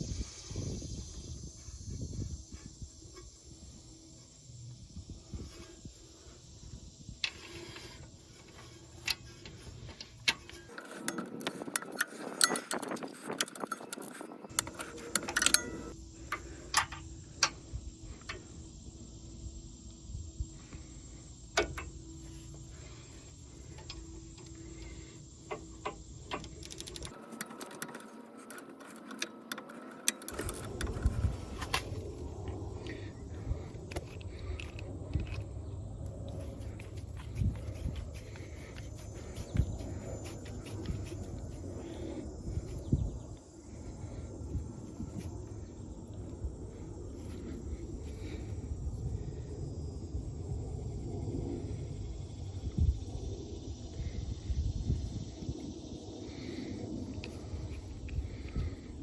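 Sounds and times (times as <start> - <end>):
hand tools clicking on metal: 10.3 - 16.0, 26.3 - 31.9.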